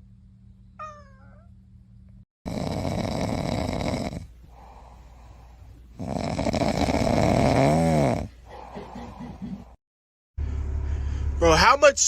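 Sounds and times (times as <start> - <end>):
loud snoring: 2.4 - 5.0, 5.9 - 8.8.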